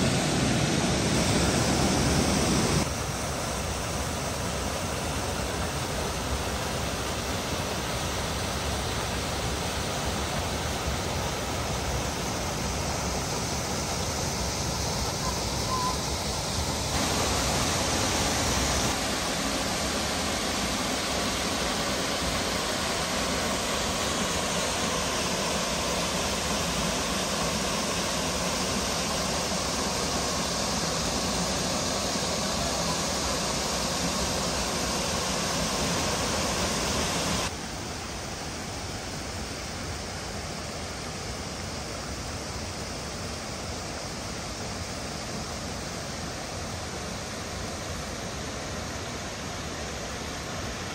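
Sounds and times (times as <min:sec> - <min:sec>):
waterfall roaring: 0:00.0 - 0:50.9.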